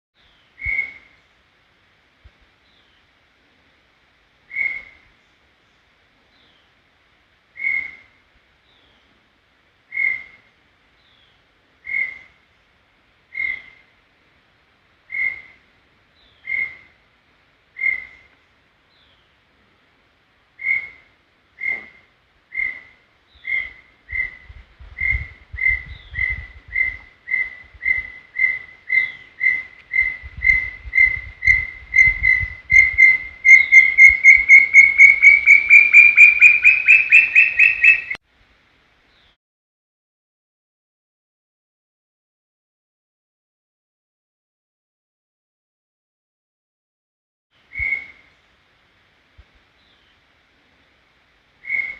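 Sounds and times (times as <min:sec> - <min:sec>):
bird whistling song: 0:00.2 - 0:01.2, 0:04.5 - 0:05.0, 0:07.6 - 0:08.1, 0:09.9 - 0:10.4, 0:11.8 - 0:12.3, 0:13.3 - 0:13.8, 0:15.1 - 0:15.6, 0:16.2 - 0:16.9, 0:17.8 - 0:18.3, 0:20.6 - 0:21.0, 0:21.6 - 0:38.2, 0:47.7 - 0:48.3, 0:51.6 - 0:51.9.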